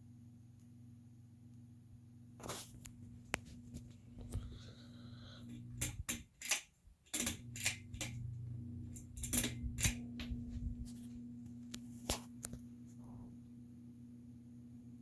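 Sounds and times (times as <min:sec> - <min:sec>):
ceiling fan motor humming: 0:00.0 - 0:15.0
sharp clicks and rattles: 0:05.8 - 0:08.3, 0:08.9 - 0:10.1.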